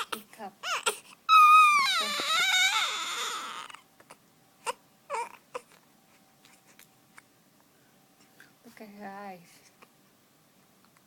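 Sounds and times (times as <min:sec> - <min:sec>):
high-pitched whining cry: 0:00.0 - 0:03.8.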